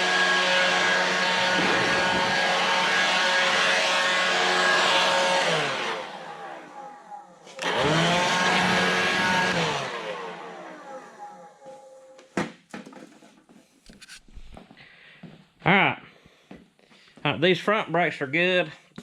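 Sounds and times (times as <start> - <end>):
electric fan tool whining: 0.0 - 12.1.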